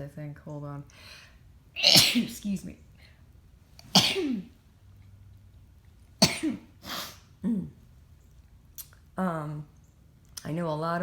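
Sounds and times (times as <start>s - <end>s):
woman coughing: 1.8s - 2.4s, 4.0s - 4.5s, 6.2s - 6.7s
woman sneezing: 1.8s - 2.4s.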